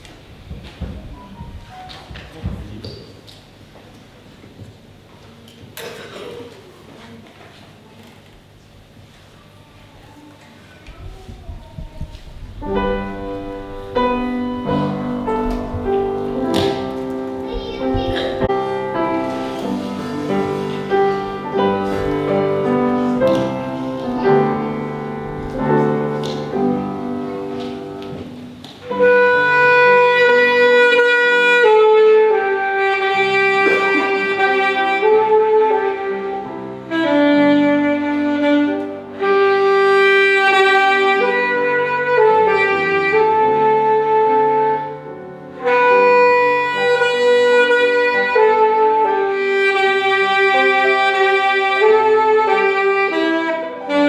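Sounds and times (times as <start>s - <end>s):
piano accompaniment: 0.8s - 2.8s, 12.4s - 54.0s
saxophone melody: 12.6s - 54.0s.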